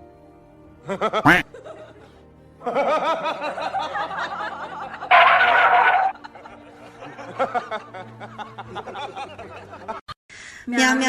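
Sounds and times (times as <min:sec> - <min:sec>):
music: 0:00.0 - 0:10.0
giggling laughter: 0:02.7 - 0:10.0.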